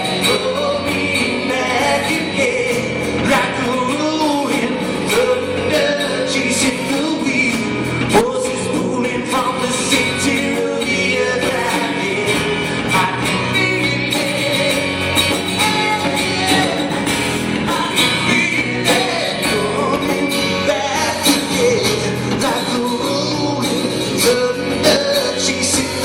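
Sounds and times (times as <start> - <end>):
person singing: 0.0 - 26.0
rock band playing live: 0.0 - 26.0.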